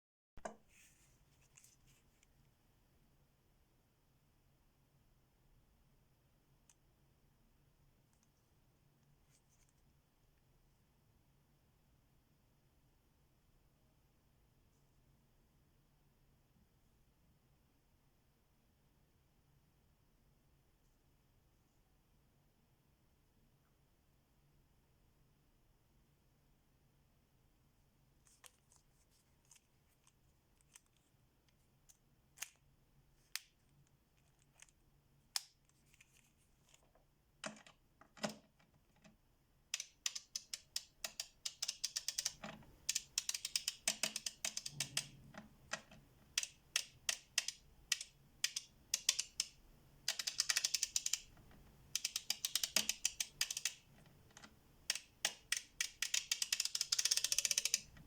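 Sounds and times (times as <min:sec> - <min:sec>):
ratchet pawl clicking: 0:39.8 - 0:45.1, 0:50.1 - 0:51.3, 0:52.0 - 0:53.8, 0:54.9 - 0:57.9.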